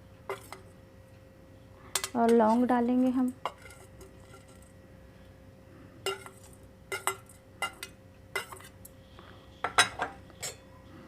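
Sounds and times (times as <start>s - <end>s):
metal spoon clinking on pot: 1.9s - 2.7s, 6.0s - 8.7s, 9.7s - 10.7s.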